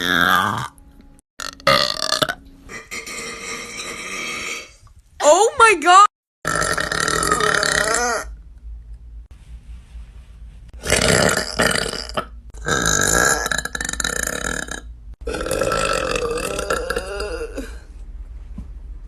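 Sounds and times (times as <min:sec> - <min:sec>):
woman burping: 0:06.4 - 0:08.3, 0:10.8 - 0:17.8.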